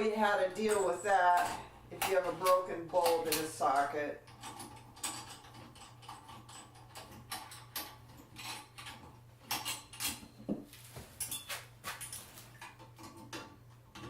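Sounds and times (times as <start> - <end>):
metal fittings clinking: 11.2 - 12.4.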